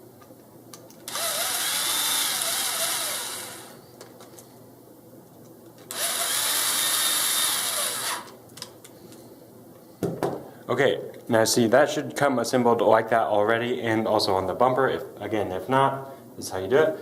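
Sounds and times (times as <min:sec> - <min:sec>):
power driver driving screws: 0:01.1 - 0:03.8, 0:05.9 - 0:08.4.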